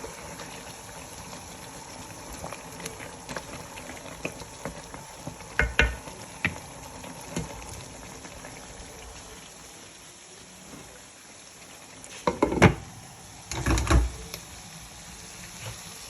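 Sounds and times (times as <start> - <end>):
food sizzling in a pan: 0.0 - 16.0
utensil knocking against pan: 5.6 - 6.0.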